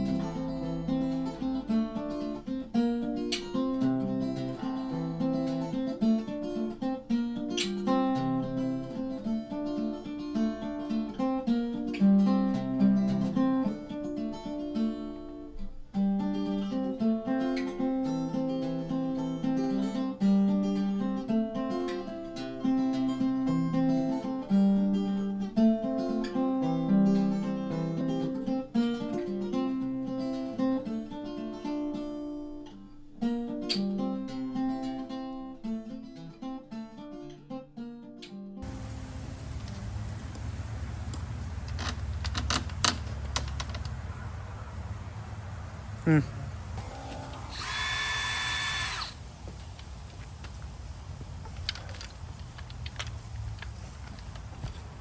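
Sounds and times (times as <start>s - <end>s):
acoustic guitar music: 0.0s - 42.2s.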